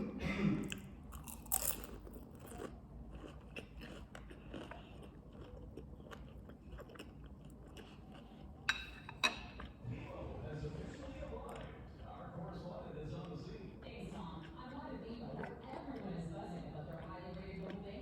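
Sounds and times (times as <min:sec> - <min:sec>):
person chewing crunchy food: 0:00.6 - 0:09.8.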